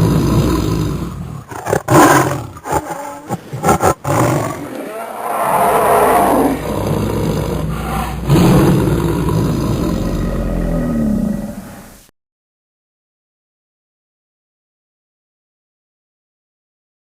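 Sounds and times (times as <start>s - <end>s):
dragon growling roar: 0.0s - 12.0s.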